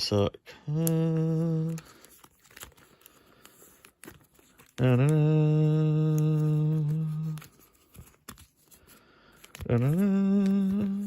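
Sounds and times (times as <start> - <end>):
person humming: 0.5 - 2.2, 4.6 - 7.8, 9.6 - 11.0
cards being handled: 0.6 - 11.0.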